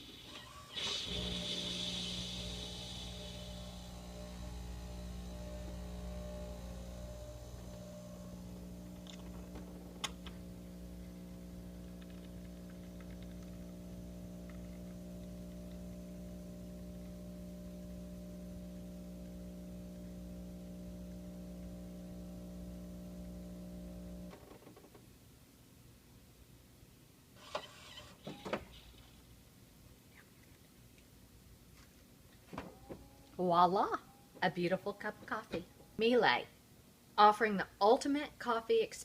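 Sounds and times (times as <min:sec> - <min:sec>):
coffee machine humming: 0:00.4 - 0:24.4.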